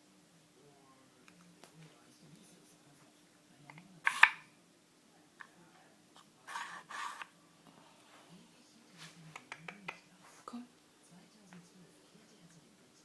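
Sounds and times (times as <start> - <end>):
plastic plates clacking: 3.7 - 4.4
plates scraping slides: 4.1 - 4.4, 6.5 - 7.3.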